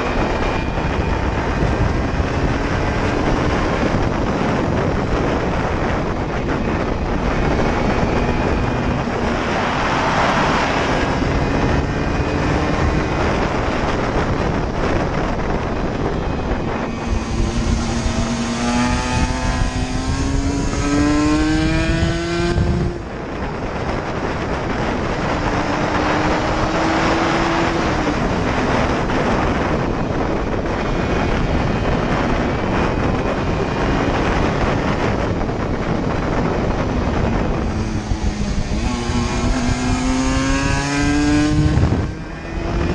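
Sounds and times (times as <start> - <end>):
wind noise on microphone: 0.0 - 42.9
two-stroke engine revving hard: 16.9 - 23.0, 36.5 - 42.9.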